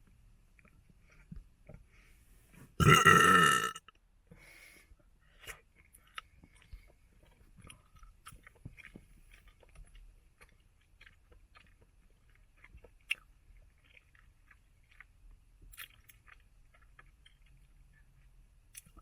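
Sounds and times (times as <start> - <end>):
bubble gum chewing: 2.8 - 3.8.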